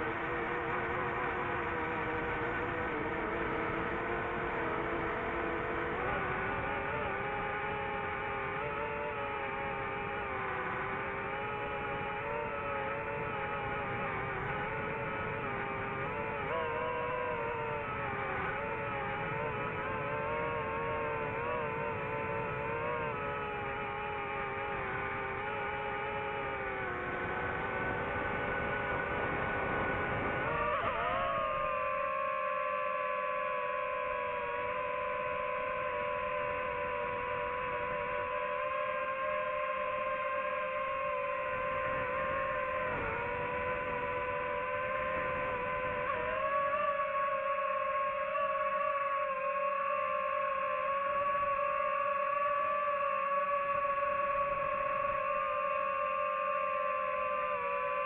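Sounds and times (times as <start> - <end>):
drone propellers whining: 0.0 - 58.0.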